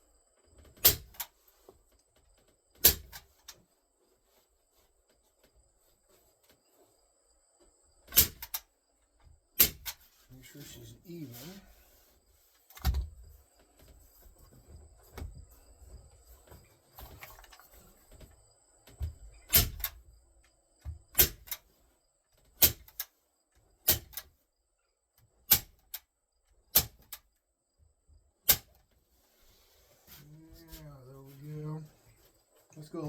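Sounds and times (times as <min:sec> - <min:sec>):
faint handling rustle: 0:03.3 - 0:07.8, 0:10.0 - 0:18.5, 0:29.0 - 0:33.0
staple gun snapping: 0:25.5 - 0:25.9.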